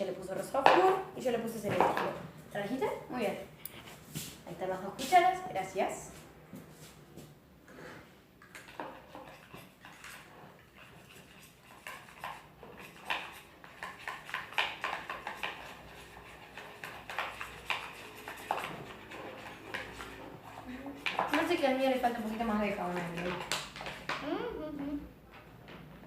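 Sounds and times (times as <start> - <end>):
spoons stirring and scraping slime: 8.4 - 24.2.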